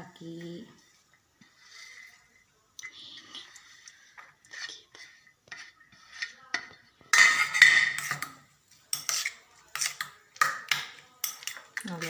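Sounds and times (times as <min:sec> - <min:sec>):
utensil beating egg in bowl: 0:03.1 - 0:12.0.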